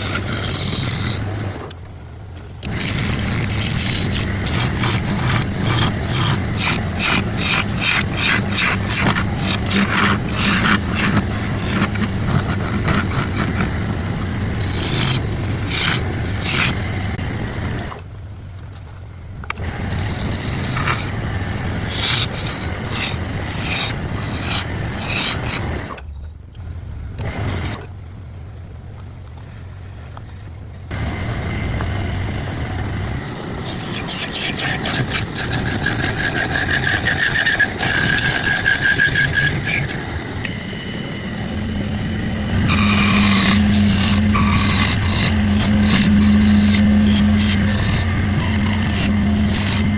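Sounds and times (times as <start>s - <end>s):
scraping and rasping on wood: 0.0s - 1.8s, 2.6s - 18.0s, 19.6s - 26.0s, 27.2s - 27.9s, 33.5s - 40.7s, 41.8s - 49.9s
motor humming: 0.0s - 1.9s, 2.6s - 18.1s, 19.5s - 26.0s, 27.2s - 27.9s, 30.9s - 49.9s
whining tone: 2.6s - 18.0s, 19.6s - 26.0s, 30.9s - 49.9s.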